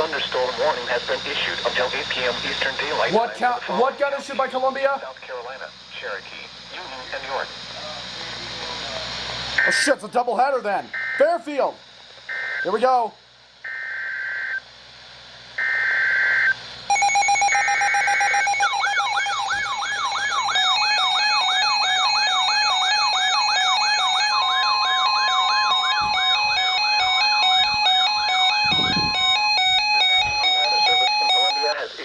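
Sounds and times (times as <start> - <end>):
warbling data tones: 0.0 - 7.9, 9.5 - 13.0, 13.6 - 14.6, 15.6 - 32.0
stepped beeping tones: 9.6 - 10.0, 15.6 - 31.8
whooping alert tone sweep: 15.6 - 31.7.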